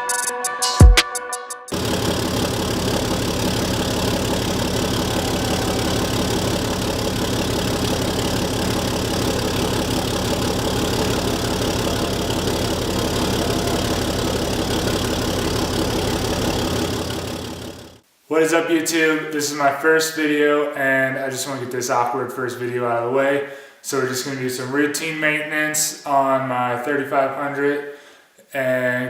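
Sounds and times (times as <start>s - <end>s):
diesel pickup engine idling: 1.7s - 18.0s.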